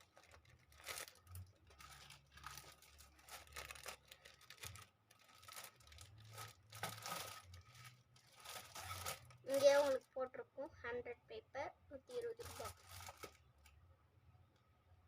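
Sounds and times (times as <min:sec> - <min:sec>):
paper rustling: 0:00.0 - 0:10.0, 0:12.1 - 0:13.7.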